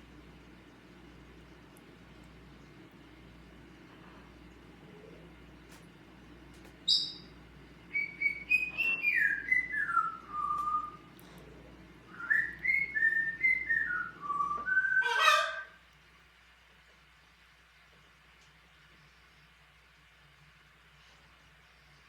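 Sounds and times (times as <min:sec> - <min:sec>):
parrot whistling a tune: 0:06.8 - 0:07.3, 0:07.9 - 0:11.1, 0:12.1 - 0:15.7
parrot harsh call: 0:14.8 - 0:15.8.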